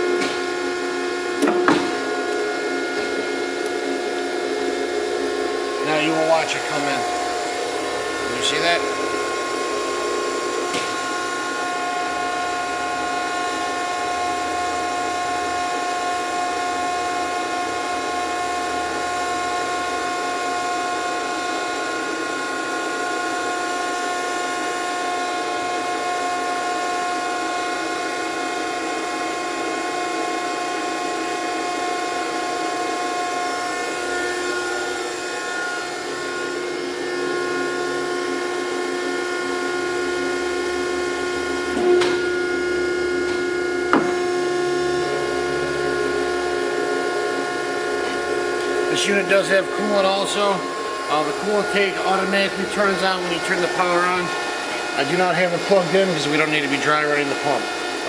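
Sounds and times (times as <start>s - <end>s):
grinder machine hum: 0.0s - 58.0s
motor whining tones: 31.2s - 58.0s.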